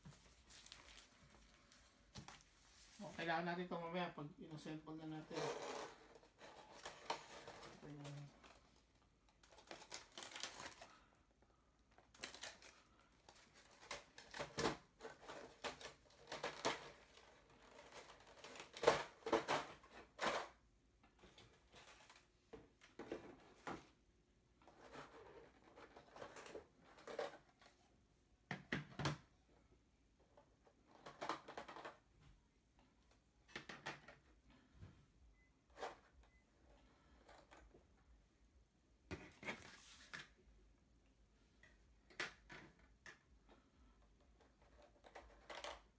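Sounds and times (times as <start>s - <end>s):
plastic packaging clicks and rustles: 0.0s - 2.6s, 5.4s - 11.1s, 11.8s - 23.9s.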